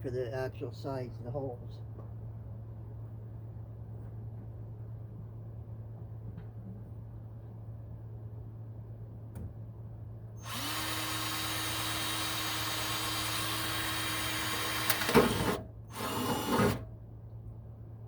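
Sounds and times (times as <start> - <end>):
power drill whining: 10.4 - 16.8.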